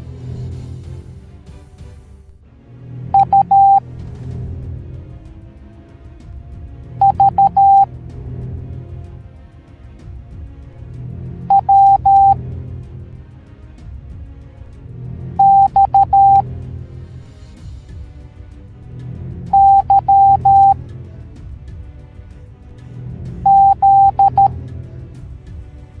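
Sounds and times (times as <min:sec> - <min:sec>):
background music: 0:00.0 - 0:26.0
morse code beeps: 0:03.2 - 0:03.8, 0:07.0 - 0:07.9, 0:11.5 - 0:12.4, 0:15.4 - 0:16.4, 0:19.6 - 0:20.8, 0:23.5 - 0:24.5.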